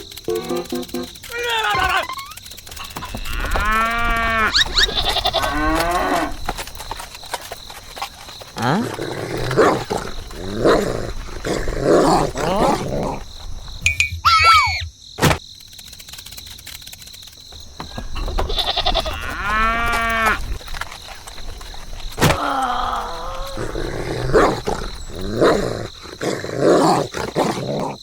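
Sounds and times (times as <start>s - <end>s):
animal bleating calls: 1.3s - 6.4s, 18.4s - 20.4s.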